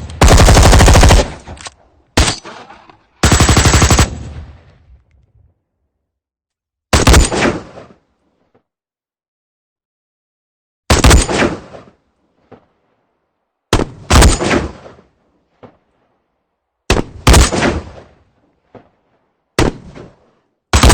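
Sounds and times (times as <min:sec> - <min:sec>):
gunshots ringing out: 0:00.0 - 0:04.8, 0:06.9 - 0:08.0, 0:10.9 - 0:12.7, 0:13.7 - 0:15.8, 0:16.9 - 0:18.9, 0:19.6 - 0:20.9.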